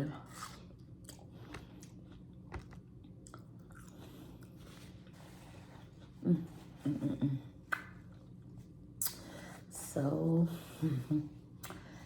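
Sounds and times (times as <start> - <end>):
person chewing: 0.2 - 5.1.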